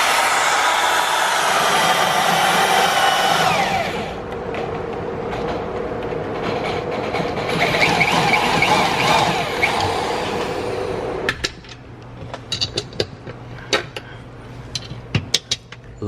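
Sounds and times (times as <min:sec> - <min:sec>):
electric drill whining: 0:00.0 - 0:04.2, 0:07.6 - 0:11.3.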